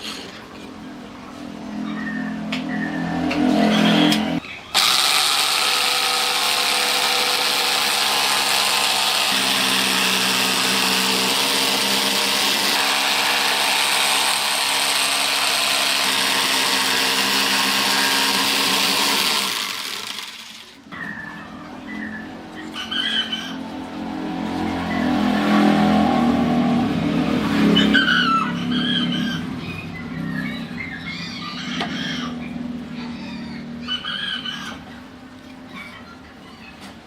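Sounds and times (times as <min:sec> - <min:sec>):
handheld power tool whining: 0:04.1 - 0:20.8.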